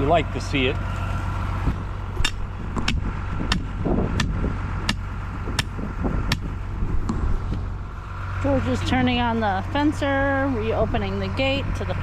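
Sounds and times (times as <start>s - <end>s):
idling engine drone: 0.0s - 12.0s.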